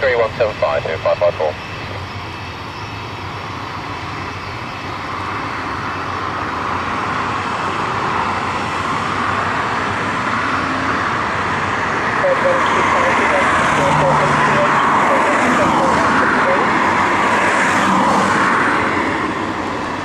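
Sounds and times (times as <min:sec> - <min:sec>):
jet engines roaring: 0:00.0 - 0:20.0.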